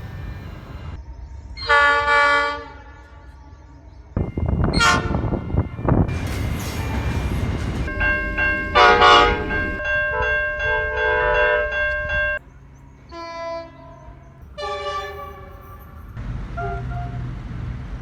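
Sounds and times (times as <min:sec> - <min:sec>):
passing train rumble: 0:00.0 - 0:18.0
locomotive air horn blasts: 0:01.6 - 0:03.0, 0:04.2 - 0:12.4, 0:13.1 - 0:17.3.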